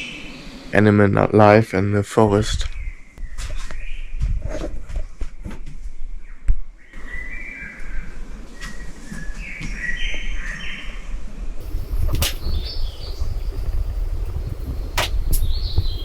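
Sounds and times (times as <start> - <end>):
birds whistling: 11.6 - 16.0.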